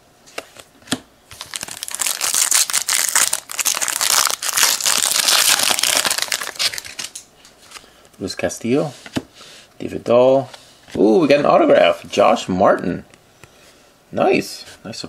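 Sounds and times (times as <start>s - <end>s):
foil wrapper crinkling: 1.3s - 7.2s.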